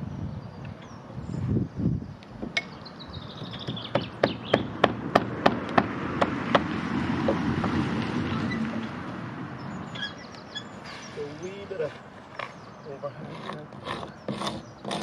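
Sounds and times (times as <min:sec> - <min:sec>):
sharp knocks: 0:03.4 - 0:07.8.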